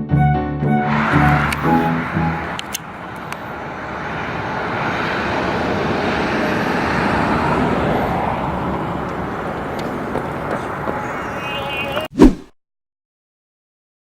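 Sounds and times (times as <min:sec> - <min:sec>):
whoosh rush of noise: 0:12.2 - 0:12.5.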